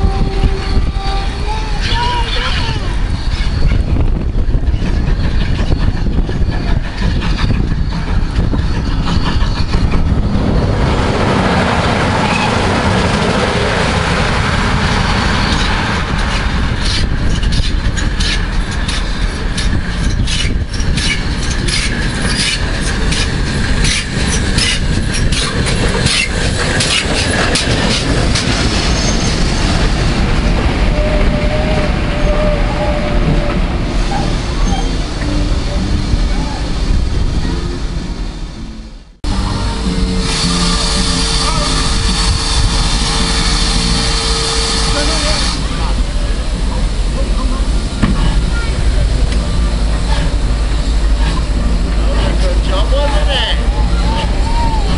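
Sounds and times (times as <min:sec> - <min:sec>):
train rumbling past: 0:00.0 - 0:54.9
wheels clicking over rail joints: 0:15.4 - 0:31.4.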